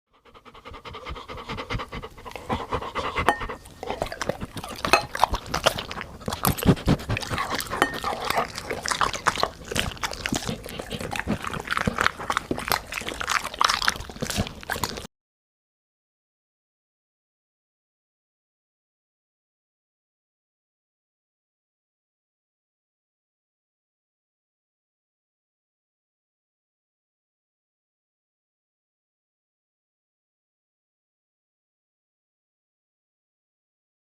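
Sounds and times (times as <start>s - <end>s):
dog panting: 0.1s - 15.1s
dog chewing and lapping food: 0.2s - 15.1s.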